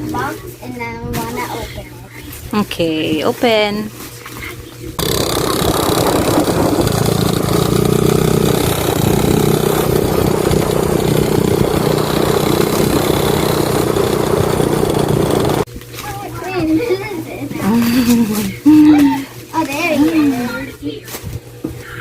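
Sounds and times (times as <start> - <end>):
engine idling: 5.0 - 15.7.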